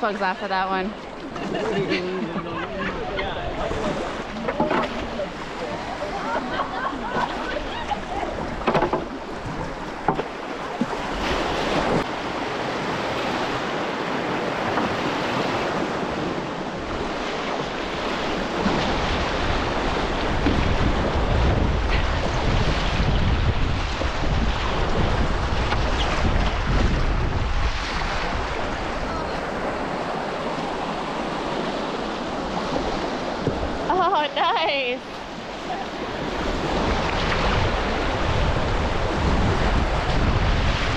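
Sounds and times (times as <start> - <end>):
whitewater river rushing: 0.0 - 14.5, 28.0 - 40.9
wind buffeting microphone: 0.0 - 40.9.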